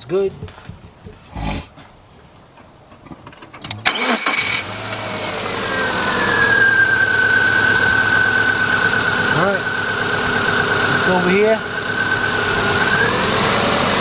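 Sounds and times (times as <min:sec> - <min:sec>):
car engine cranking and running: 0:02.9 - 0:14.0
high whine: 0:04.6 - 0:14.0.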